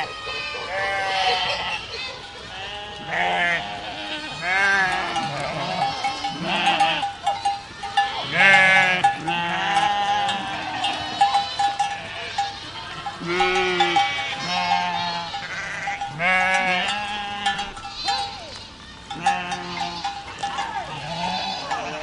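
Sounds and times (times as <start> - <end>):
goats bleating: 0.0 - 22.0
bell clinking: 4.9 - 22.0.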